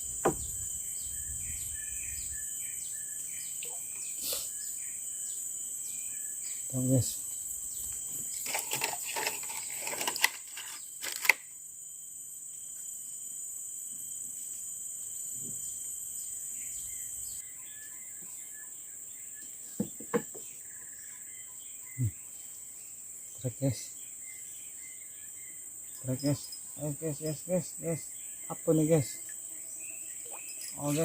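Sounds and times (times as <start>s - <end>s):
forest insect chorus drone: 0.0s - 31.0s
clattering clicks and rustles: 8.4s - 11.4s.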